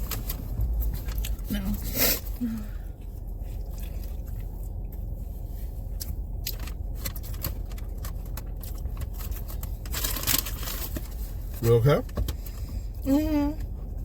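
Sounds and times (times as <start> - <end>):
person chewing food: 0.0 - 1.5, 2.8 - 9.8
low rumble: 0.0 - 14.0.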